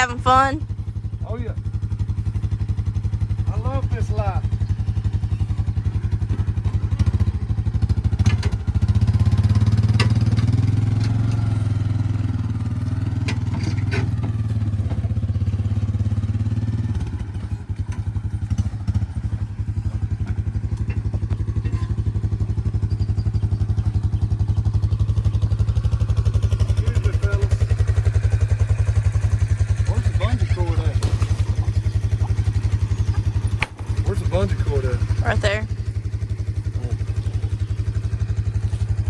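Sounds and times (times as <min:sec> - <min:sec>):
small engine running: 0:00.0 - 0:39.0
light clanks: 0:13.2 - 0:15.6, 0:17.4 - 0:22.5.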